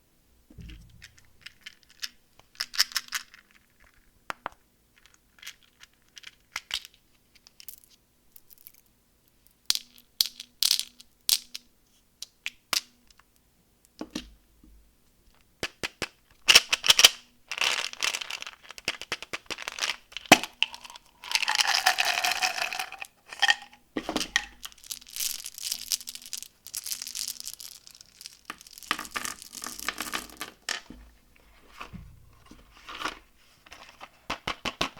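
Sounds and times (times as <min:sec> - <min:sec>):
plastic wrapper crinkling: 0:17.5 - 0:23.5, 0:24.3 - 0:30.7.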